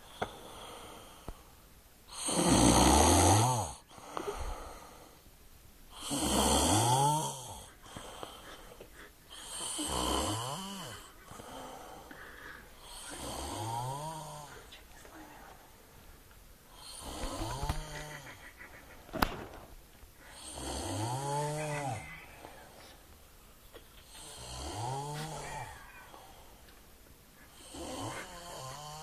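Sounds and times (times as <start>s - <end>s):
quiet breathing: 0.0s - 2.4s, 3.7s - 29.0s
loud snoring: 2.1s - 3.8s, 5.9s - 7.7s, 9.4s - 11.8s, 12.8s - 14.5s, 16.8s - 18.3s, 20.3s - 22.2s, 24.1s - 26.3s, 27.5s - 29.0s.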